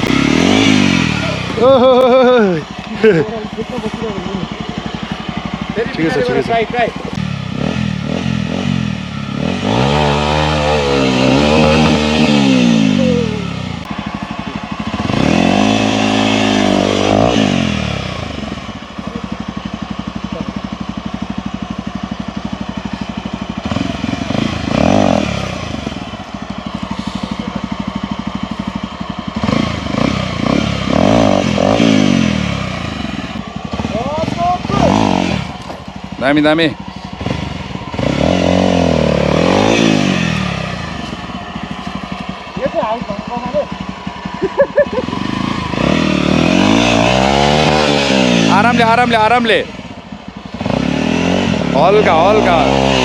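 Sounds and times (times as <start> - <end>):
motorcycle engine revving: 0.0 - 53.0.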